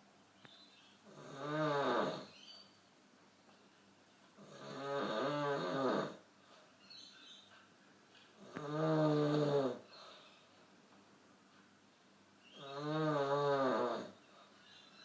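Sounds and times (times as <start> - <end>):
man snoring: 1.1 - 2.3, 4.4 - 6.2, 8.4 - 9.8, 12.6 - 14.2
quiet breathing: 6.0 - 10.8, 13.8 - 15.0.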